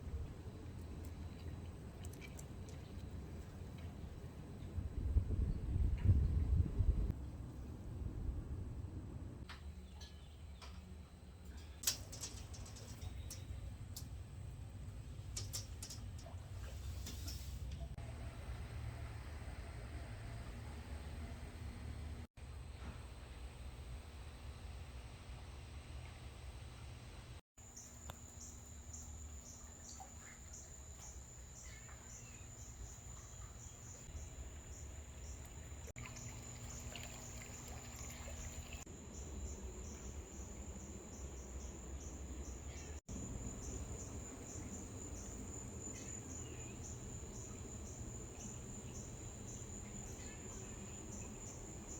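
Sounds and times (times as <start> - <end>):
low steady hum: 0.0 - 51.9
crickets chirping: 27.6 - 51.9.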